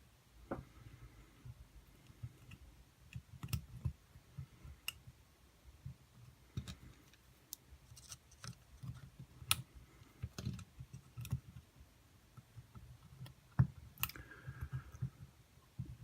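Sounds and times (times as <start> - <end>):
small clicks and taps: 1.5 - 5.2, 5.8 - 11.7.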